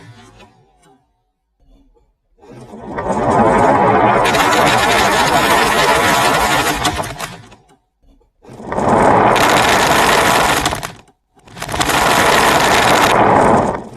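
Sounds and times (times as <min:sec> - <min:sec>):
marbles rattling down wooden run: 0:02.7 - 0:07.4, 0:08.6 - 0:13.9.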